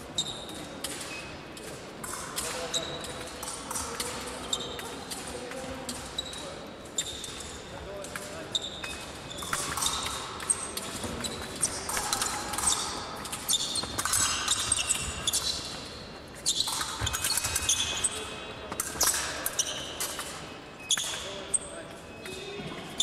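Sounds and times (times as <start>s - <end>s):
shoe squeaks: 0.1s - 1.3s, 4.4s - 4.8s, 6.1s - 7.6s, 8.4s - 23.0s
fencing blades clashing: 0.3s - 22.6s.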